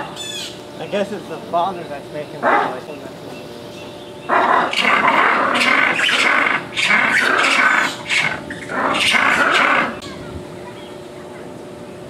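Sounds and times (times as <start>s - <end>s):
lemur calling loudly: 2.4s - 3.0s, 4.2s - 10.2s.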